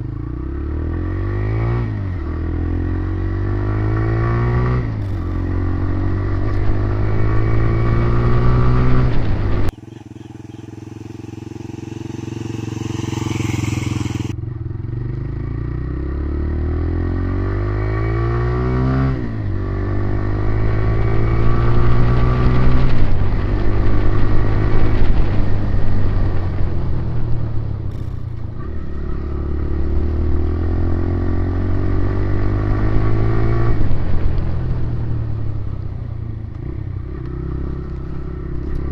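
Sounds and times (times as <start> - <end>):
motorcycle engine revving: 0.0 - 38.9
long rising sweep: 10.8 - 14.4.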